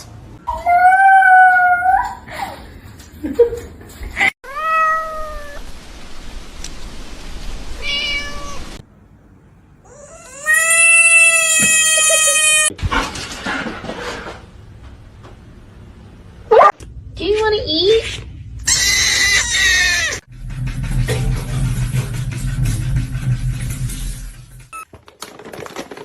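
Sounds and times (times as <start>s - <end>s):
cats meowing: 4.5s - 5.6s, 7.8s - 8.6s, 9.9s - 12.7s.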